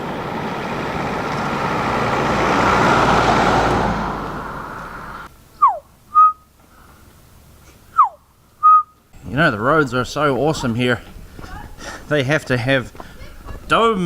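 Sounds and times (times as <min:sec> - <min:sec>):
vehicle passing on road: 0:00.0 - 0:05.5
two-part whistle: 0:05.6 - 0:06.5, 0:07.9 - 0:09.0.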